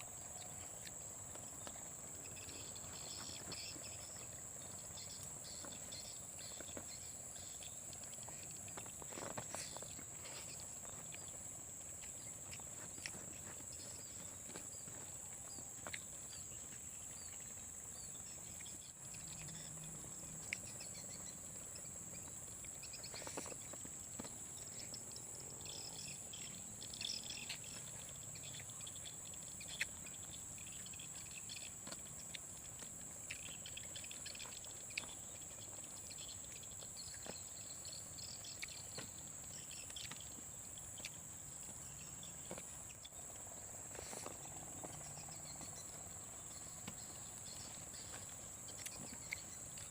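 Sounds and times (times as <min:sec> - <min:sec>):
short chirping calls: 0:44.0 - 0:49.9.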